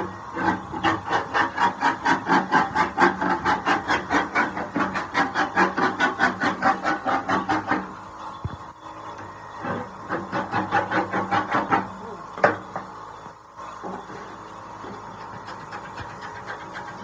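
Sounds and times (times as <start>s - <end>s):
hand tool stroking on wood: 0.0s - 7.9s, 14.9s - 17.0s.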